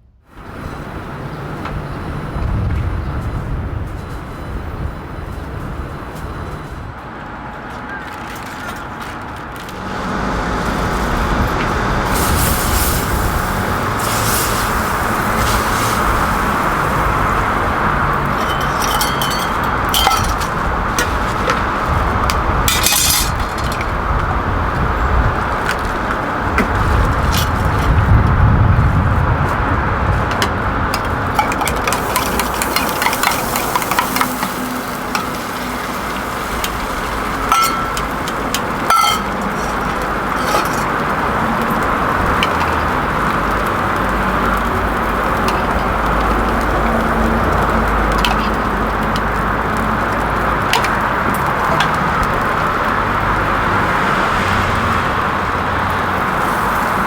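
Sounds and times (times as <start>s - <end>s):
road traffic passing: 0.1s - 57.0s
vehicle rumbling by: 8.6s - 57.0s
metal and glass clinks: 18.3s - 21.2s, 22.7s - 23.9s, 37.5s - 41.0s.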